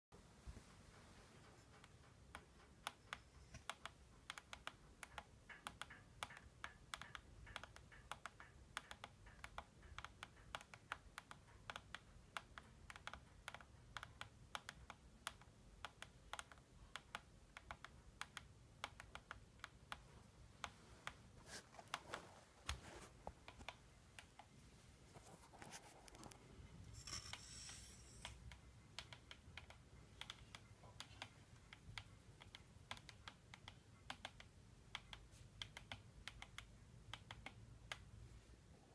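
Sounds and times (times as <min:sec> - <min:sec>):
rc helicopter ticking clicks: 0:03.6 - 0:20.0.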